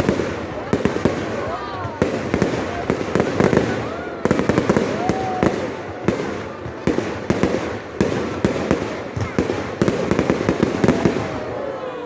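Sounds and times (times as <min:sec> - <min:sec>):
fireworks bangs: 0:00.0 - 0:11.8.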